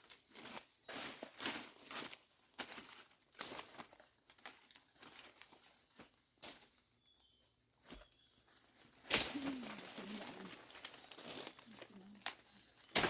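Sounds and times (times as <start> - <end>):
rustling: 8.8 - 13.0.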